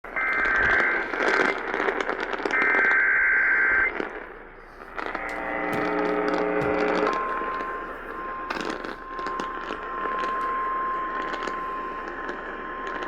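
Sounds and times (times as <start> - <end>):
crackling radio static: 0.1 - 13.0
low buzzing tone: 5.3 - 13.0.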